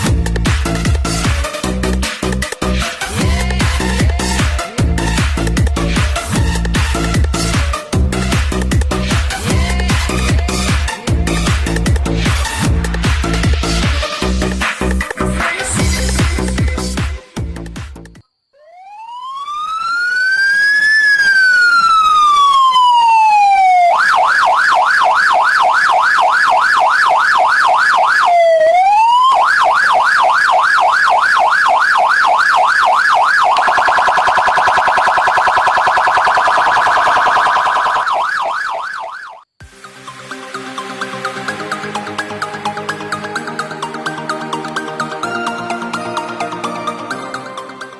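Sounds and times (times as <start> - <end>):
electronic police siren: 18.4 - 39.5.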